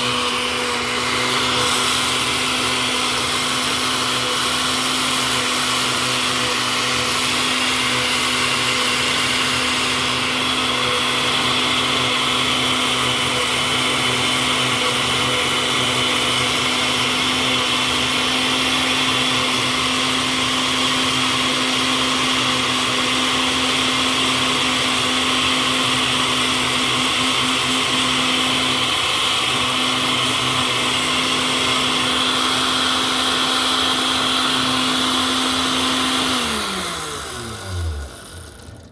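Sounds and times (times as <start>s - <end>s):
blender grinding nuts: 0.0s - 38.9s.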